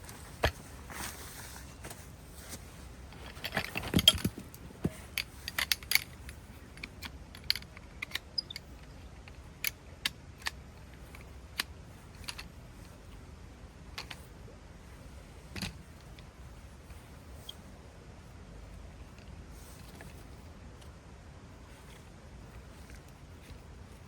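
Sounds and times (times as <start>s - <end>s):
camping gear handled: 0.0s - 9.0s.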